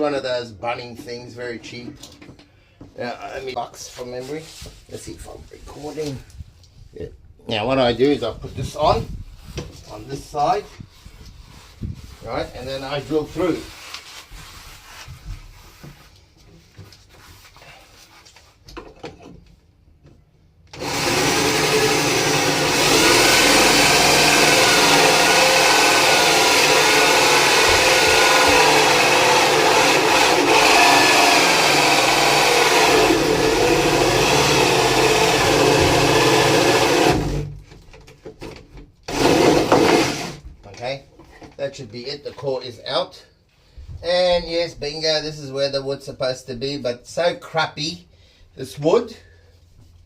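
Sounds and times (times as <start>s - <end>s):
drill with hole saw cutting wood: 20.8s - 37.5s, 39.1s - 40.4s.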